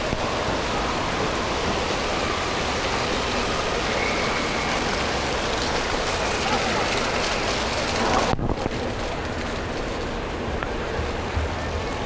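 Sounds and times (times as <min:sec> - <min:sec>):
water falling and splashing: 0:00.0 - 0:12.0.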